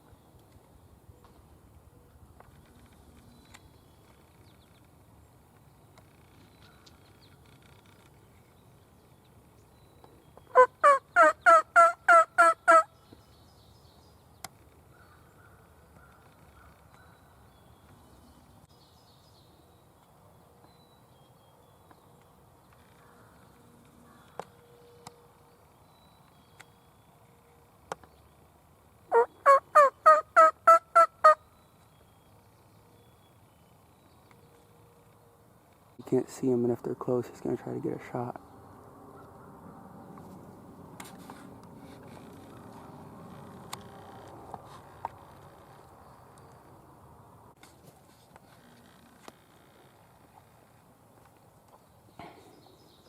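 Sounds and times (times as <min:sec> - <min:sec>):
turkey yelping: 0:10.5 - 0:12.9, 0:29.1 - 0:31.4.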